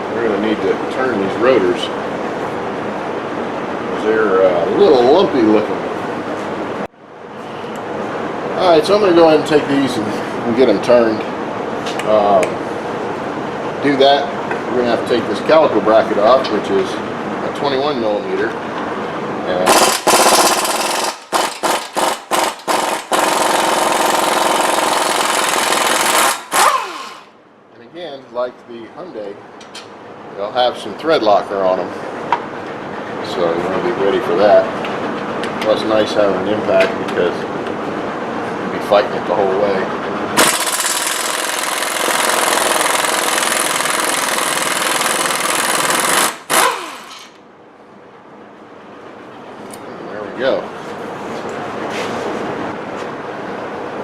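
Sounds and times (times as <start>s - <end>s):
impact wrench hammering: 19.7s - 27.3s, 40.4s - 47.4s.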